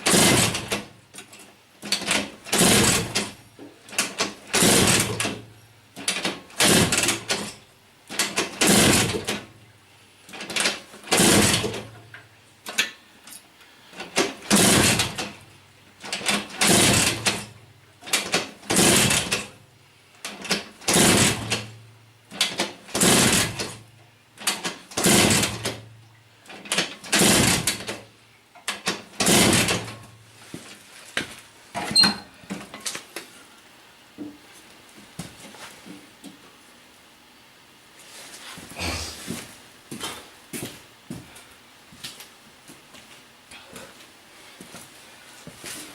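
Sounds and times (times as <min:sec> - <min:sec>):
scooter engine kick-start attempts: 0:00.0 - 0:05.4, 0:06.0 - 0:09.5, 0:10.3 - 0:12.0, 0:14.0 - 0:15.4, 0:16.0 - 0:19.5, 0:20.2 - 0:23.8, 0:24.4 - 0:25.9, 0:26.5 - 0:28.0, 0:28.6 - 0:30.0.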